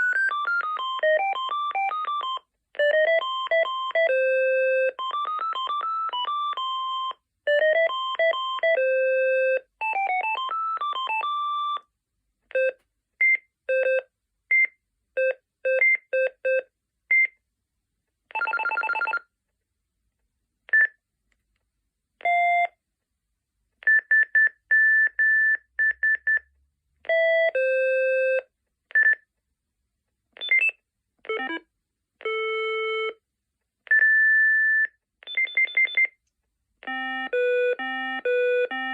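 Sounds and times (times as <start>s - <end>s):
electronic ringtone beep tunes: 0.0s - 11.9s, 33.9s - 36.2s, 36.9s - 38.9s.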